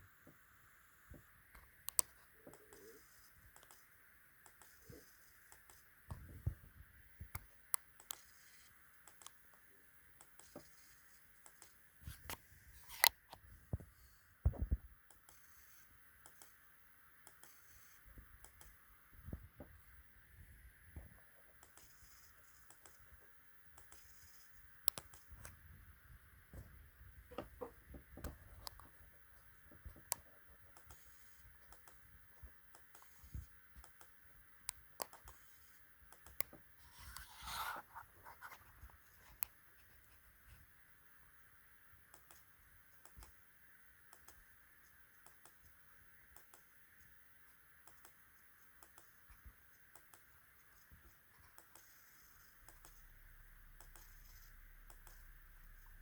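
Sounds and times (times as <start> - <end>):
faint steady hiss: 0.0 - 56.0
laptop clicks and ticks: 1.5 - 6.6, 7.2 - 9.6, 10.2 - 13.8, 14.4 - 16.6, 17.2 - 18.8, 21.5 - 25.6, 29.7 - 37.3, 42.0 - 43.4, 44.0 - 53.2, 53.8 - 56.0
scratchy sound: 36.8 - 39.4.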